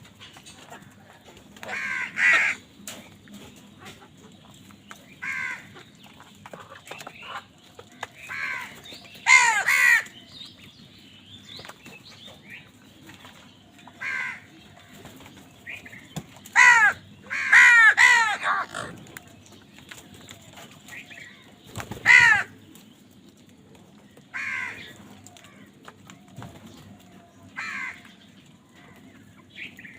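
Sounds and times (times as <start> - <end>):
crows cawing: 1.6 - 2.6, 5.2 - 5.7, 8.3 - 10.1, 14.0 - 14.5, 16.5 - 19.0, 22.0 - 22.6, 24.3 - 25.0, 27.6 - 28.0.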